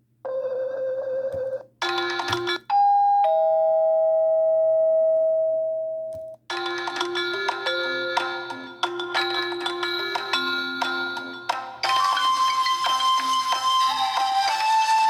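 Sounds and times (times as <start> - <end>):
melodic ringtone: 6.5 - 15.0.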